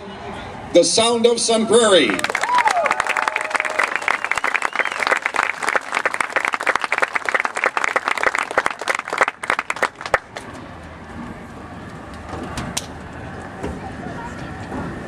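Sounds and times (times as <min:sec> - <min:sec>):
crowd applauding: 0:02.0 - 0:10.5.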